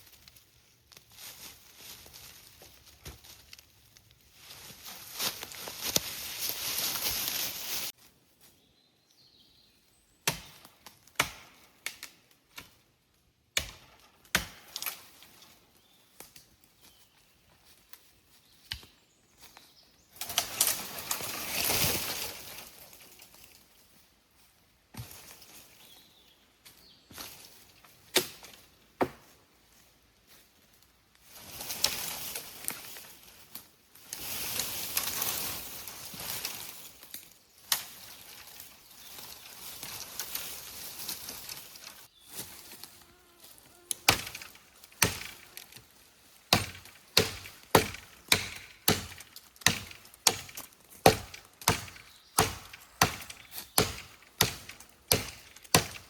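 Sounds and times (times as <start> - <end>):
rustling and scraping: 0.0 - 8.0.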